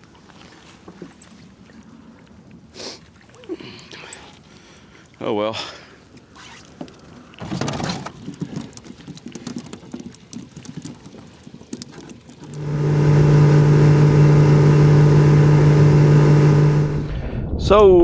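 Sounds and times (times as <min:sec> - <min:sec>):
boat motor droning: 0:12.4 - 0:17.2.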